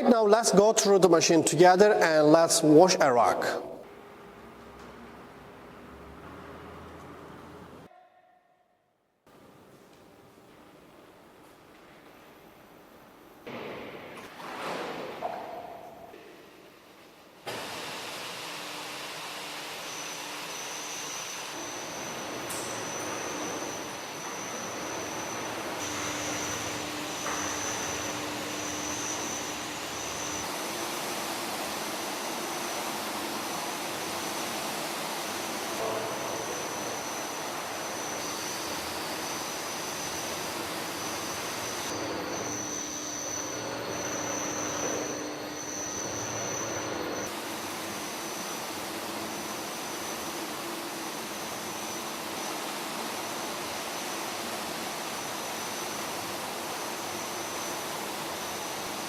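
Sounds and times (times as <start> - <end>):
carpet washing machine rushing: 17.5 - 59.0
thin high whine: 19.8 - 31.1, 32.2 - 59.0.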